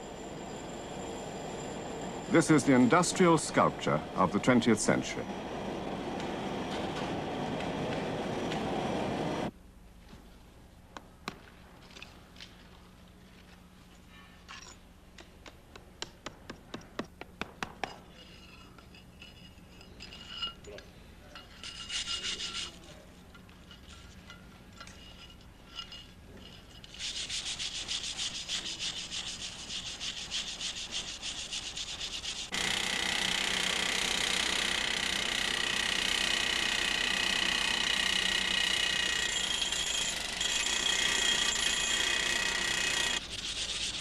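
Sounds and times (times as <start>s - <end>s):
taps and knocks on metal: 15.2s - 18.0s
metal scraping: 17.9s - 32.6s.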